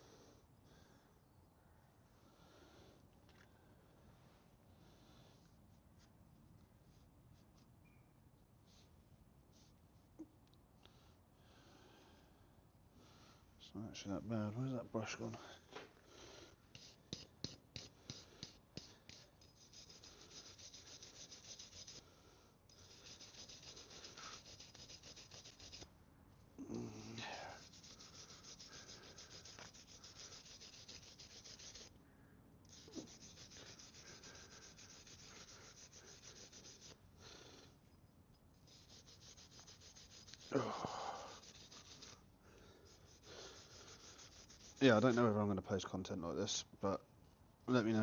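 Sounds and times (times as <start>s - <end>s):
brush scrubbing: 16.7s - 22.1s, 22.7s - 25.9s, 26.9s - 31.9s, 32.7s - 37.6s, 38.6s - 45.4s.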